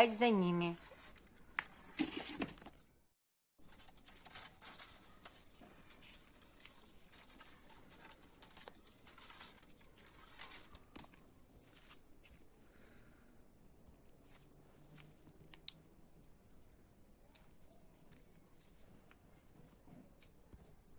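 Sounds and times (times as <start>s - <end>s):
faint rustling in branches: 3.6s - 12.5s.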